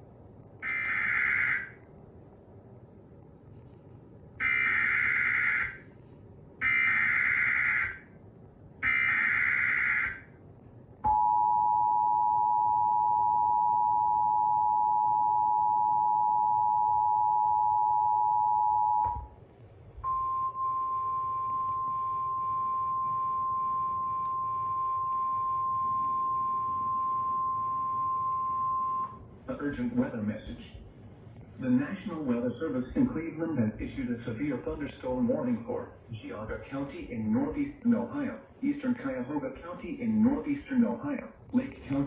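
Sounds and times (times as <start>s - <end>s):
two-tone attention signal: 11.1s - 19.3s, 20.0s - 29.2s.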